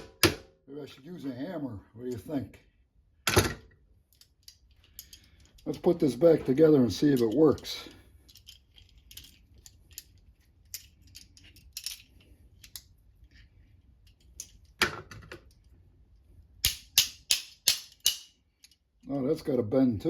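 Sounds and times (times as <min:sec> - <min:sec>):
metal pliers clinking: 0:04.1 - 0:12.9.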